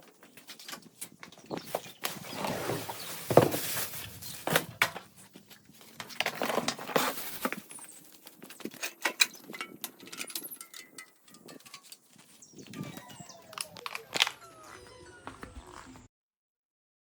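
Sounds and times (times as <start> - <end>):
objects knocking and clicking: 8.4 - 14.4.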